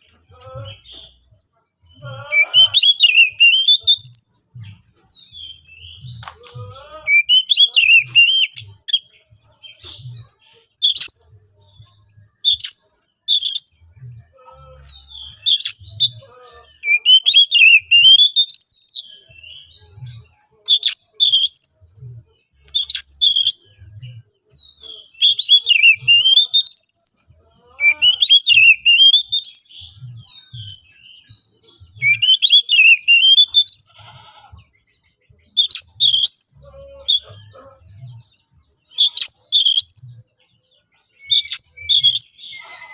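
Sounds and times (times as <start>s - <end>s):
magpie-robin singing whistles: 2.4s - 4.4s, 7.1s - 9.1s, 16.8s - 19.1s, 20.7s - 21.8s, 22.7s - 23.7s, 24.9s - 27.2s, 27.8s - 29.8s, 31.9s - 34.0s, 35.6s - 37.2s, 38.9s - 40.1s, 41.1s - 42.6s.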